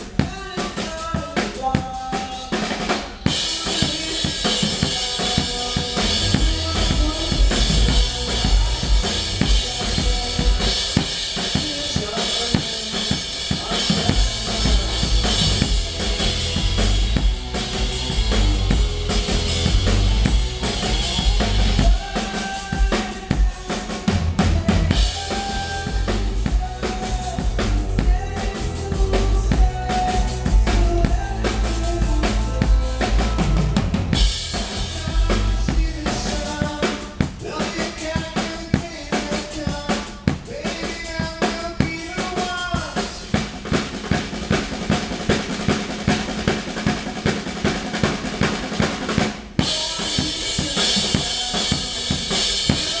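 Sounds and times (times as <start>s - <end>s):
drum kit beat: 0.0s - 53.0s
heavy bass: 0.0s - 53.0s
rock band playing: 0.0s - 53.0s.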